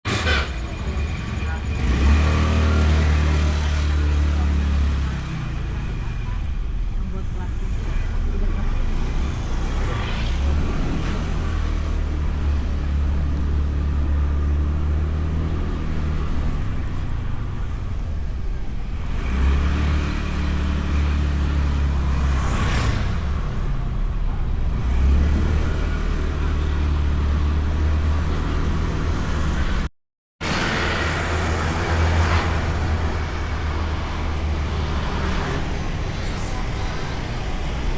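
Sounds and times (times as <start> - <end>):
road and wind noise: 0.0 - 37.9
vehicle rushing past: 8.9 - 16.8, 24.7 - 37.9.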